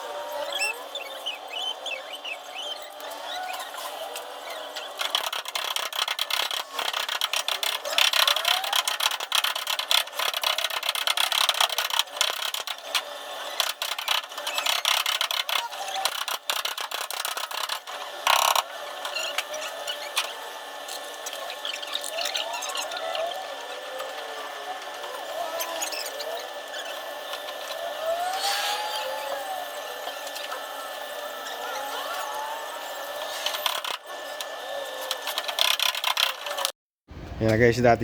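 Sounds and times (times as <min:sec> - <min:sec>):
squeaky chirps: 0:00.4 - 0:03.9
dent repair tools clicking and scraping: 0:04.8 - 0:20.3, 0:33.2 - 0:36.7.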